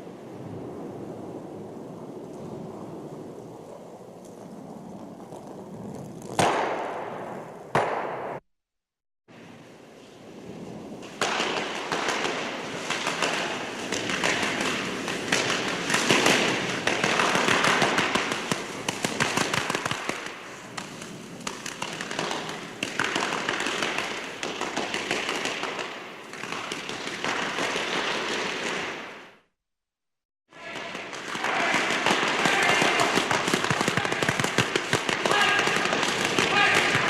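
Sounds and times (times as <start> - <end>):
brooms sweeping on ice: 12.1 - 29.2.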